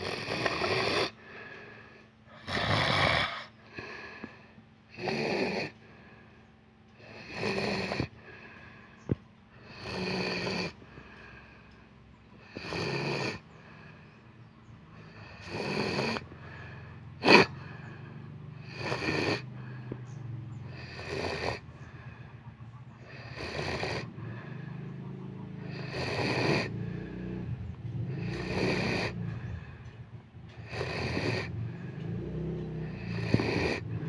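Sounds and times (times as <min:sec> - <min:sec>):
person snoring: 0:00.0 - 0:01.5, 0:02.3 - 0:05.8, 0:07.0 - 0:08.6, 0:09.6 - 0:11.5, 0:12.4 - 0:13.9, 0:15.0 - 0:20.0, 0:20.7 - 0:21.6, 0:23.0 - 0:24.6, 0:25.6 - 0:29.6, 0:30.6 - 0:31.8, 0:32.8 - 0:34.0
sharp snort: 0:00.0 - 0:01.5, 0:02.3 - 0:05.8, 0:07.0 - 0:11.7, 0:12.4 - 0:14.2, 0:14.9 - 0:34.0.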